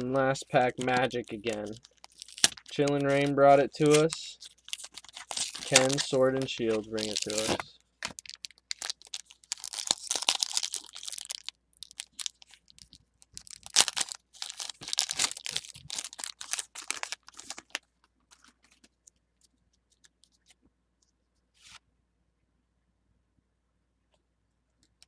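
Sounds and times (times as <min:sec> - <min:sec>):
foil wrapper crinkling and tearing: 0:00.0 - 0:19.1.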